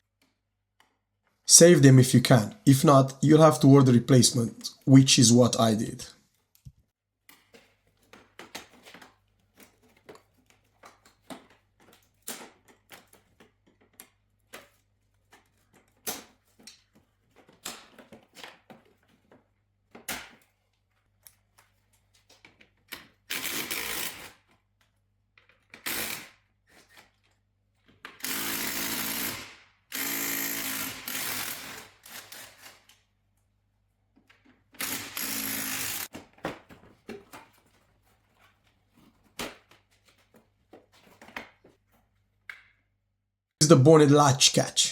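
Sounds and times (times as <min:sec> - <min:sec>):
cordless impact gun: 0:28.2 - 0:32.8, 0:34.8 - 0:36.1.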